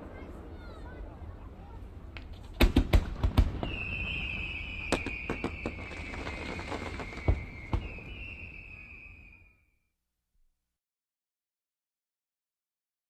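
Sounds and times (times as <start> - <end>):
firework bangs: 0.0 - 9.5
firework cracks: 1.9 - 9.5
firework whistle: 3.4 - 9.9.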